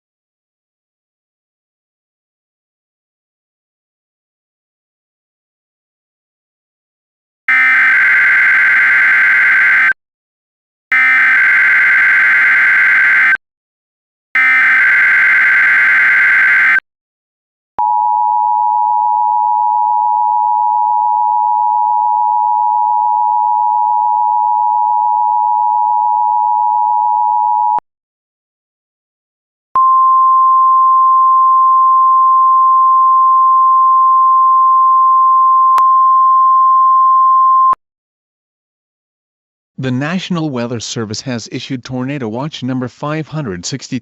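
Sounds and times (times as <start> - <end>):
buzzy data bursts: 7.5 - 9.9, 11.0 - 13.4
steady attention tone: 7.5 - 9.9, 10.9 - 13.4, 14.4 - 16.8.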